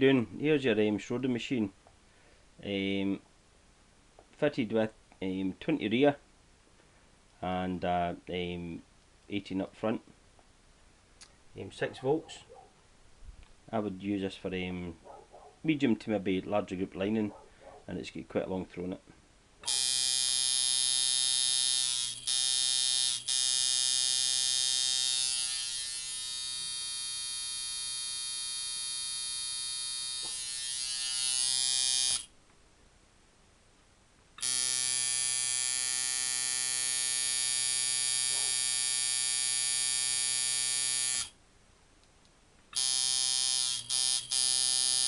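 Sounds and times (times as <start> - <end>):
tattoo machine buzzing: 19.6 - 32.3, 34.4 - 41.4, 42.8 - 45.0.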